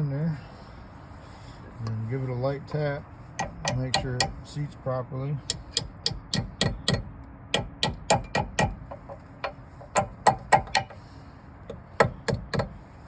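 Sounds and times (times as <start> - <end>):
metal-on-metal tapping: 3.4 - 4.4, 5.5 - 11.0, 11.7 - 12.8.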